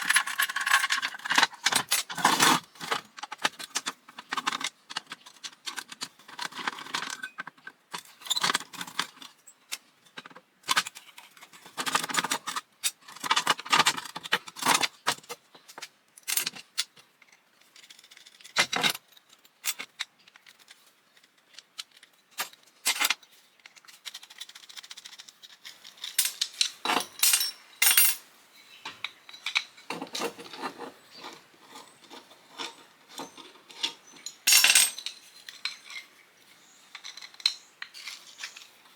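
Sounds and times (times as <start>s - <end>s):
small metal parts clinking: 0.0s - 9.1s, 16.2s - 28.2s, 31.8s - 36.2s, 36.9s - 38.7s.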